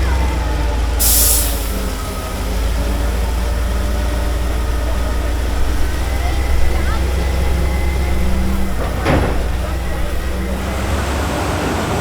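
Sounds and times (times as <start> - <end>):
diesel engine droning: 0.0 - 12.0
hissing burst: 1.0 - 2.0.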